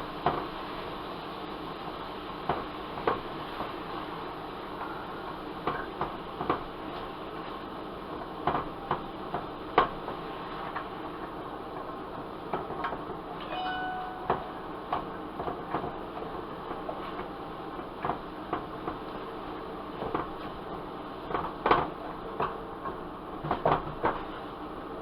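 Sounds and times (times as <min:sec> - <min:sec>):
steady background hum: 0:00.0 - 0:25.0
short beeping tone: 0:13.4 - 0:14.8.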